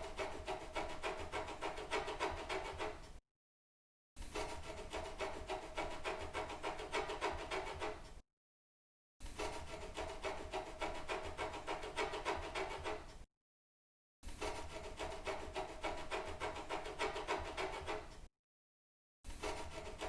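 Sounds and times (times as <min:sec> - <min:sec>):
rapid scratching strokes: 0:00.0 - 0:03.0, 0:04.2 - 0:08.1, 0:09.2 - 0:13.1, 0:14.3 - 0:18.2, 0:19.3 - 0:20.0.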